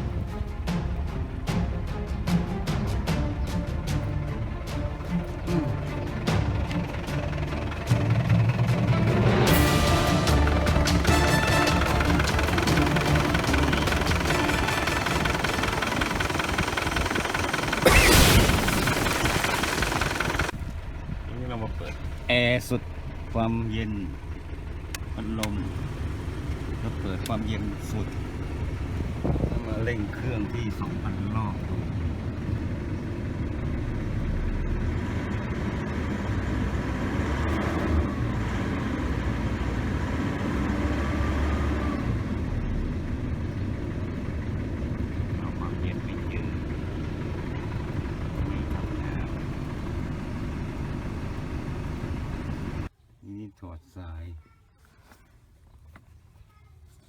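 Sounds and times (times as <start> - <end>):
pickup engine running: 0.0 - 52.9
loud rushing burst: 7.8 - 20.6.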